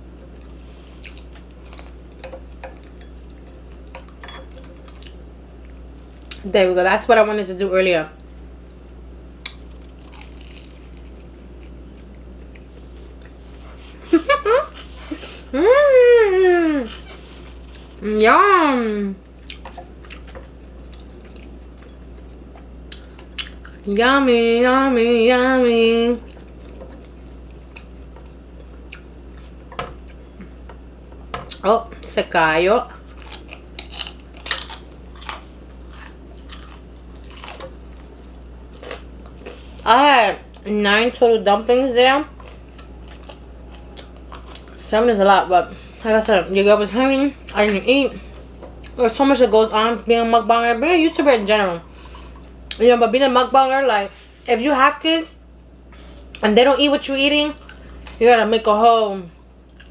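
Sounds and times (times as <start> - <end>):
person chewing food: 0.1 - 6.4, 9.4 - 15.5, 19.4 - 23.9, 26.2 - 31.6, 32.9 - 39.8, 42.4 - 44.8.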